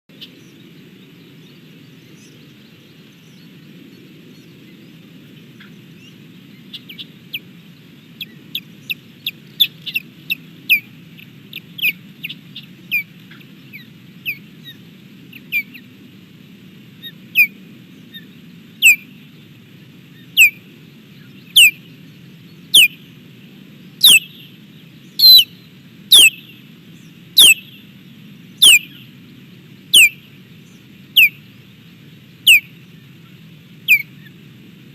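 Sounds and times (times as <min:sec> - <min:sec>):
low background hum: 0:00.1 - 0:34.9
osprey whistled calls: 0:17.0 - 0:19.2, 0:20.1 - 0:23.2, 0:24.0 - 0:29.2, 0:29.8 - 0:31.6, 0:32.3 - 0:33.0, 0:33.8 - 0:34.4.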